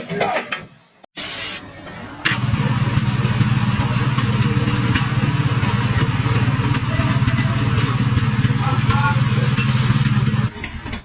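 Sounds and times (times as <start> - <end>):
engine running with low throb: 2.3 - 10.5.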